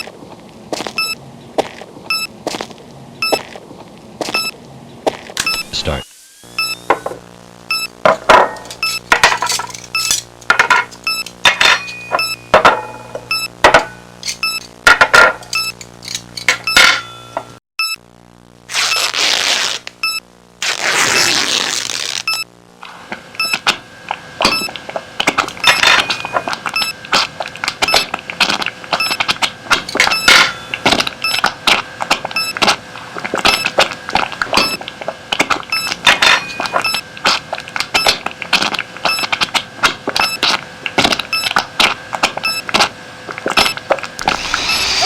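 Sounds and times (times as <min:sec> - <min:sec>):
faint steady hum: 0:00.0 - 0:38.2
metal instruments clinking: 0:08.4 - 0:12.4, 0:14.2 - 0:14.8, 0:15.4 - 0:17.6.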